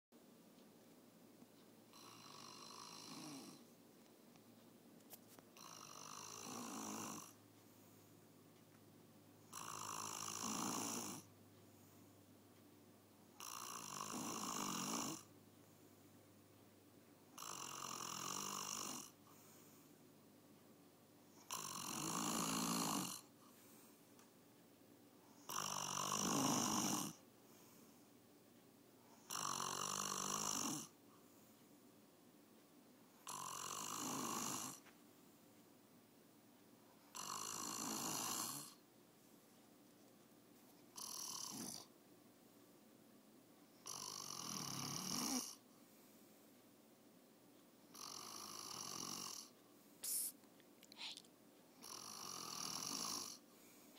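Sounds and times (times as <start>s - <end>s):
man snoring: 1.9s - 3.6s, 5.6s - 7.4s, 9.5s - 11.3s, 13.4s - 15.3s, 17.4s - 19.2s, 21.4s - 23.3s, 25.4s - 27.2s, 29.2s - 31.0s, 33.2s - 34.8s, 37.1s - 38.8s, 41.0s - 41.9s, 43.8s - 45.6s, 47.9s - 49.5s, 51.8s - 53.4s.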